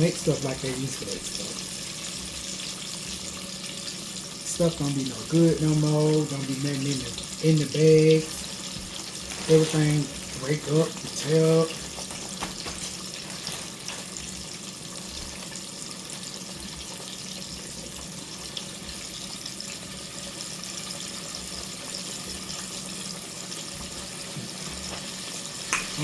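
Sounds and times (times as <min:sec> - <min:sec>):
chicken wings sizzling in hot oil: 0:00.0 - 0:26.0.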